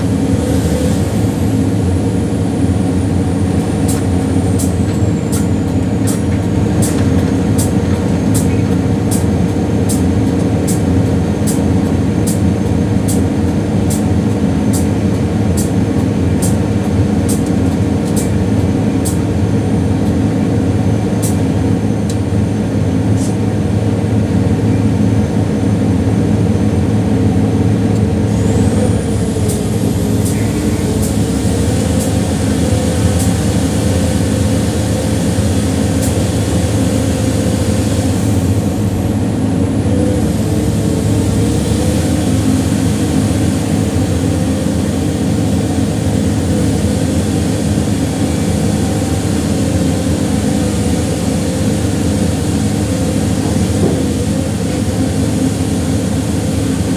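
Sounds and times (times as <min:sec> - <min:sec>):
diesel truck engine running: 0:00.0 - 0:56.9.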